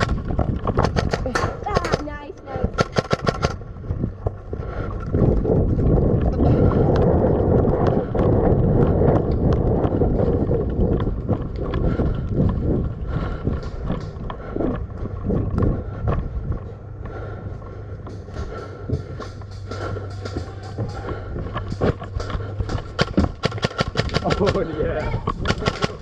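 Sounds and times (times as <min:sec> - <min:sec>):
heavy breathing close up: 0:04.5 - 0:05.4, 0:11.5 - 0:24.0.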